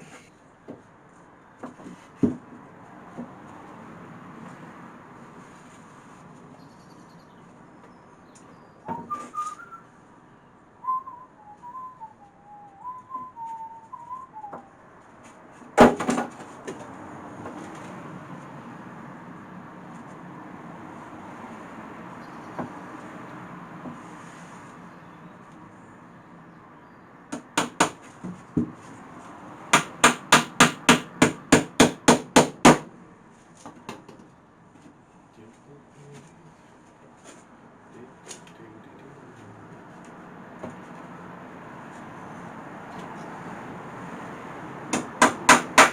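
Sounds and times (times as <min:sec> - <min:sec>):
person whistling a tune: 0:08.9 - 0:09.9, 0:10.8 - 0:14.7
hammer striking nails into wood: 0:15.8 - 0:16.4, 0:27.3 - 0:28.1, 0:29.7 - 0:32.9, 0:44.9 - 0:45.9
sharp knock: 0:27.4 - 0:28.0, 0:29.8 - 0:32.9, 0:45.0 - 0:45.9.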